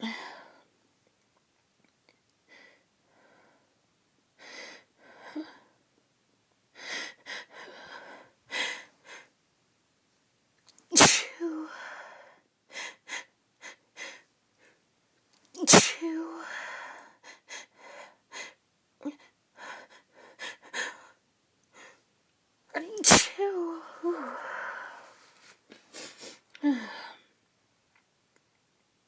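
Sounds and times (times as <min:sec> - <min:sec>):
woman sneezing: 0:11.0 - 0:11.7, 0:15.6 - 0:16.5, 0:22.8 - 0:25.0.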